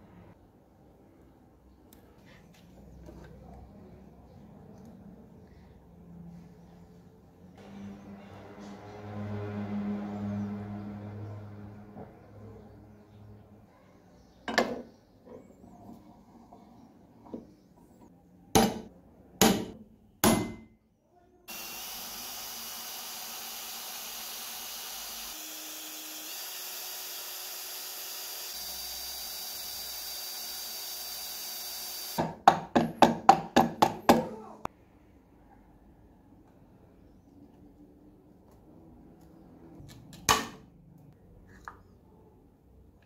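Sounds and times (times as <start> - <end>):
hammer striking metal padlock: 18.6 - 20.7.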